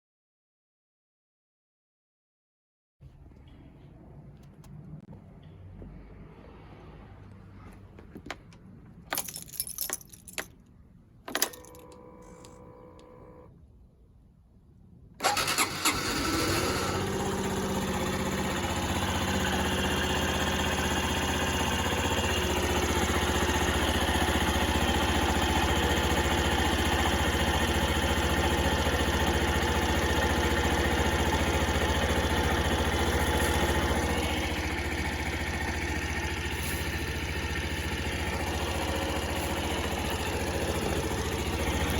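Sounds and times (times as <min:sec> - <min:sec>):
keys clicking and jingling: 0:09.0 - 0:10.7
motorcycle engine idling: 0:15.2 - 0:41.9.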